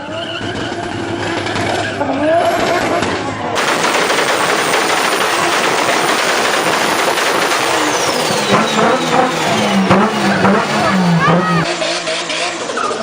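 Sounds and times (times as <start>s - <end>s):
car engine under power: 3.6s - 13.0s.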